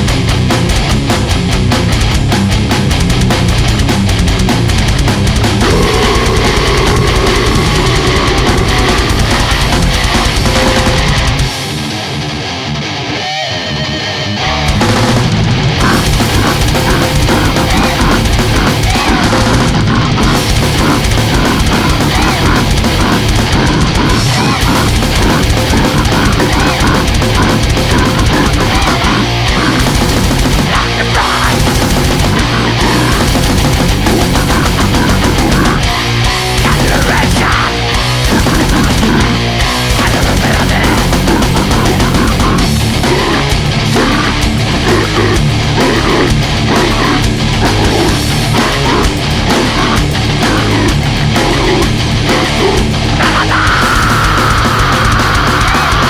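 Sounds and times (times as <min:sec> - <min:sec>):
fast dense drumming: 0:00.0 - 0:12.1, 0:14.7 - 0:56.0
bass guitar: 0:00.0 - 0:56.0
distorted electric guitars: 0:00.0 - 0:56.0.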